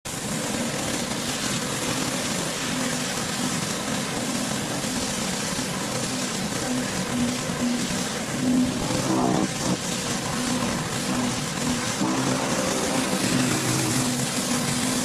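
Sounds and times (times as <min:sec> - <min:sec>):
pressure washer engine drone: 0:00.1 - 0:15.0
water spray hissing: 0:06.2 - 0:15.0.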